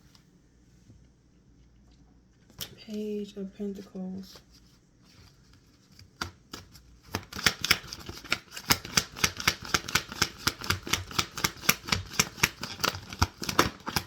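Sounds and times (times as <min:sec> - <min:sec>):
cards being shuffled: 0:04.3 - 0:14.0.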